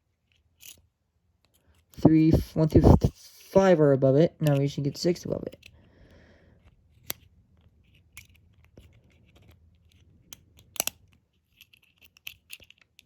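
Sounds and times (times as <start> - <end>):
lock pick scratching and clicking: 0.6 - 0.8, 6.6 - 13.0.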